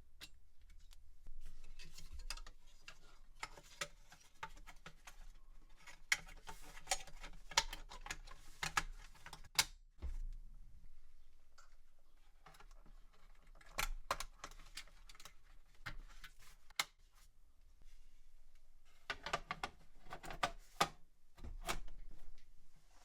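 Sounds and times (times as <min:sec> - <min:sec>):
plastic and metal parts clicking: 0:01.6 - 0:09.7, 0:12.4 - 0:16.9.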